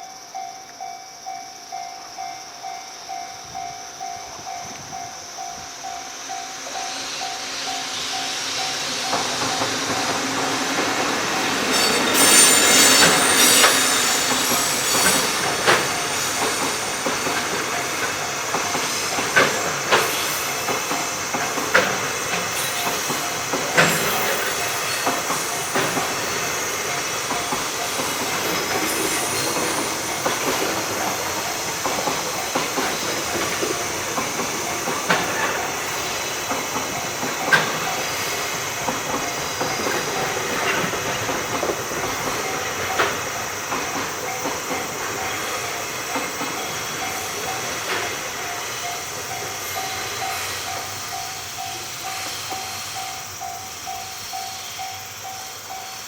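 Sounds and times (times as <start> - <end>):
high wheel squeal: 3.5 - 56.0
freight wagons rumbling: 6.8 - 52.4
wheel clacks over rail joints: 9.0 - 51.0.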